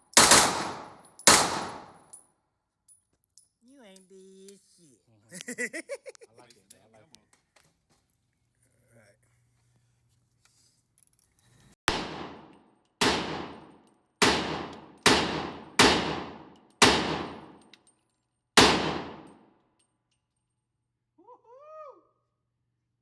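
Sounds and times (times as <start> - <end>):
gunshots: 0.1 - 2.0, 11.9 - 17.6, 18.6 - 19.3.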